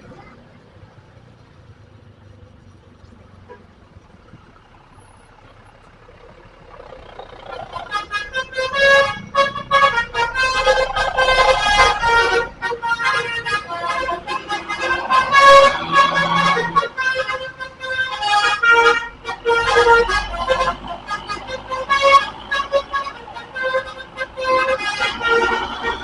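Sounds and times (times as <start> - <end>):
multi-tone bus air horn: 7.2 - 26.0.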